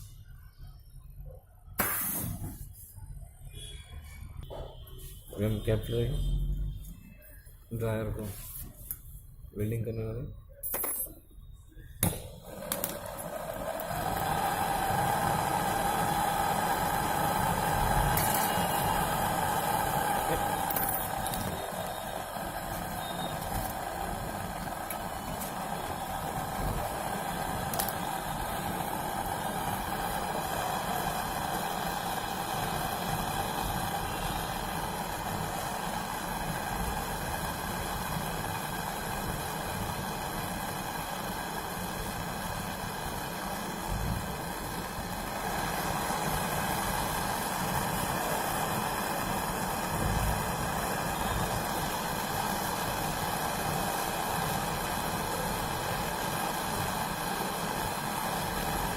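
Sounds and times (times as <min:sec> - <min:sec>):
refrigeration compressor running: 0:12.0 - 0:58.9.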